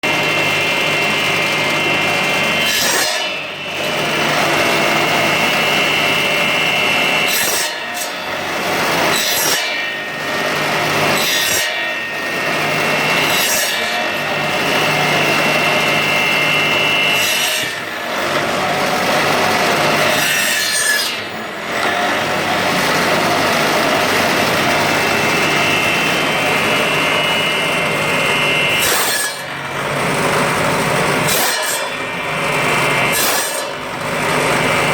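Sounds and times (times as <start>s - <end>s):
bone saw grinding: 0.2s - 34.9s.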